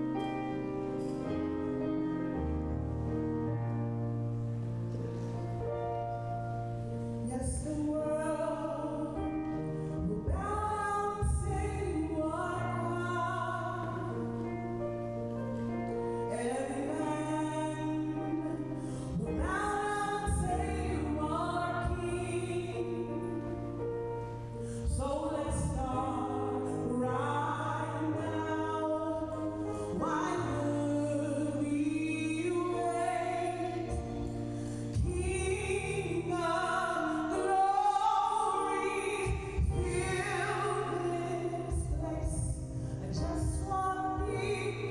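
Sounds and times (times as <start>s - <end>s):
church praise band: 0.0s - 3.0s, 7.0s - 44.9s
woman singing gospel song: 7.2s - 14.6s, 16.2s - 23.6s, 24.7s - 34.3s, 34.9s - 44.9s.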